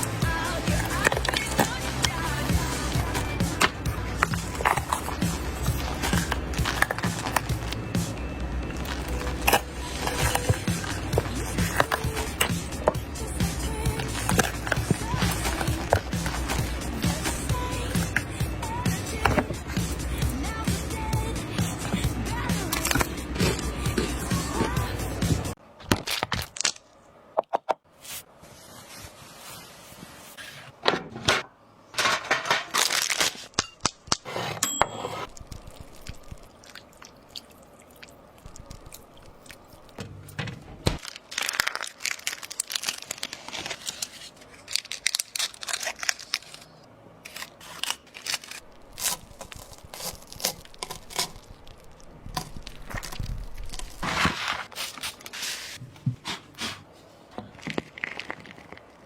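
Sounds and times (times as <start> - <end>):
crackling and tearing noises: 0.0 - 19.6, 21.9 - 24.7, 25.9 - 27.0, 32.6 - 34.3, 35.2 - 40.0, 40.8 - 55.8, 57.4 - 59.0.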